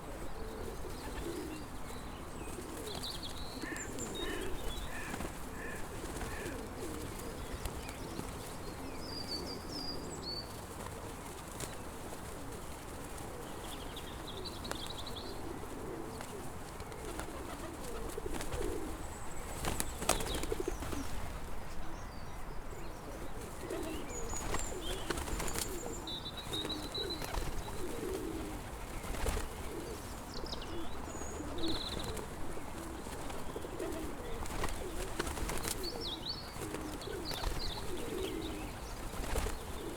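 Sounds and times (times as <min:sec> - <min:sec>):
pigeons cooing: 0:00.0 - 0:21.2, 0:23.1 - 0:39.9
outdoor background noise: 0:00.0 - 0:39.9
small birds chirping: 0:00.0 - 0:39.9
wing flaps: 0:26.6 - 0:29.8, 0:33.1 - 0:35.9, 0:36.6 - 0:39.9.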